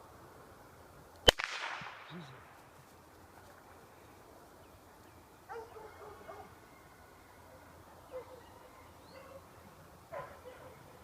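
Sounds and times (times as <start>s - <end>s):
dog barking faintly: 5.5s - 6.9s, 7.5s - 11.0s.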